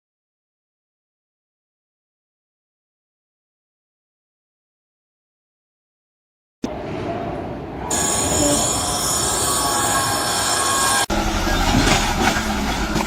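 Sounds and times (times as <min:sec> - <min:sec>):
different machine running: 0:07.9 - 0:13.0
high-pitched squealing: 0:07.9 - 0:13.0
loud machinery noise: 0:07.9 - 0:13.0.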